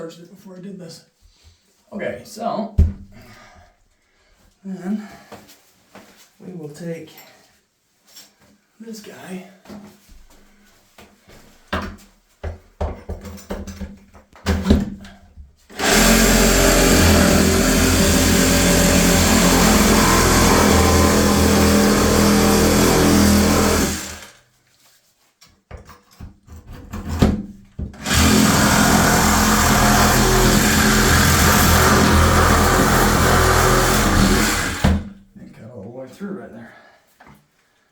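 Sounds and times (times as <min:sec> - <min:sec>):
power tool cutting ceiling: 0:15.7 - 0:24.4, 0:28.0 - 0:35.1.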